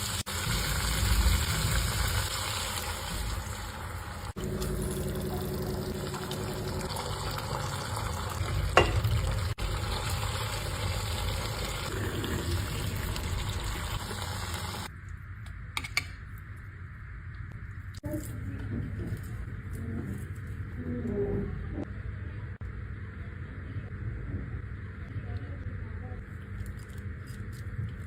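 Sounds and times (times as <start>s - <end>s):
food sizzling in a pan: 0.0s - 14.9s.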